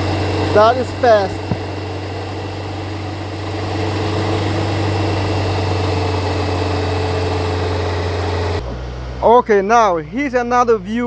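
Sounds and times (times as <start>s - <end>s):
car engine and drivetrain drone: 0.0s - 11.0s
loud low wheel bearing hum: 0.0s - 11.0s.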